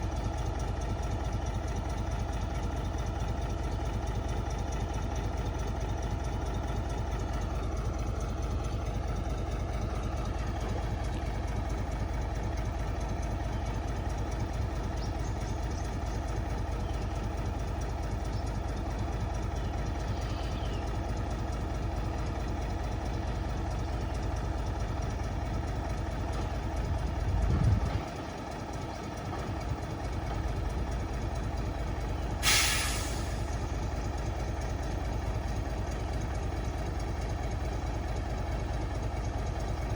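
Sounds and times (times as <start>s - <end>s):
diesel engine rumbling: 0.0s - 39.9s
short sharp hiss: 32.4s - 33.5s.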